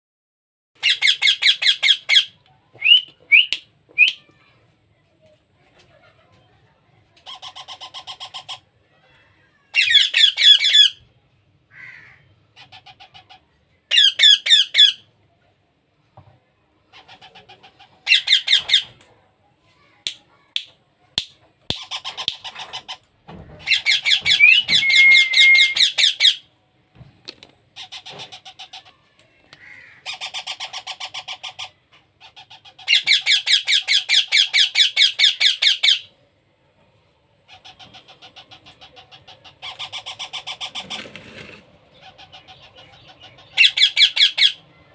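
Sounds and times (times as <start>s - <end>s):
baby parrot squawking: 0.8s - 2.4s, 7.2s - 8.7s, 9.6s - 11.0s, 11.8s - 15.0s, 16.9s - 18.9s, 21.7s - 23.0s, 23.6s - 26.5s, 27.8s - 28.9s, 29.6s - 36.1s, 37.5s - 44.6s.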